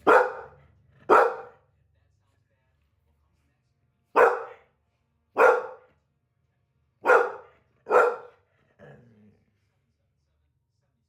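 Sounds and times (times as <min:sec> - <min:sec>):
large dog barking: 0:00.0 - 0:01.6, 0:04.2 - 0:04.6, 0:05.4 - 0:05.9, 0:07.0 - 0:08.4.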